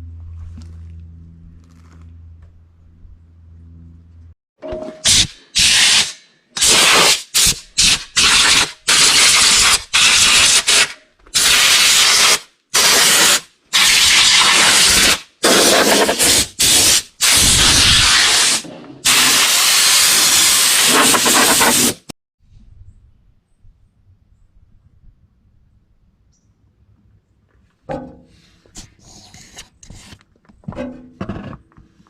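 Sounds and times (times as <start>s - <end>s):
compressed air blow gun hissing: 5.0s - 22.1s.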